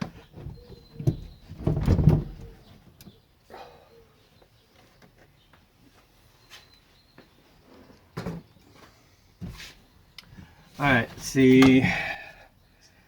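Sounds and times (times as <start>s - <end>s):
knocking and scraping of parts: 0.0s - 3.1s.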